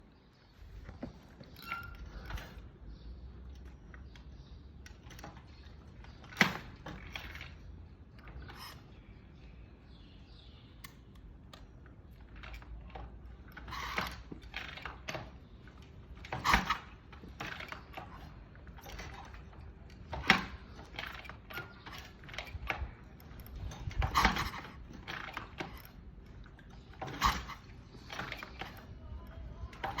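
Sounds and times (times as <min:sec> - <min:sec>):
kick-starter clunks: 0:12.3 - 0:29.0.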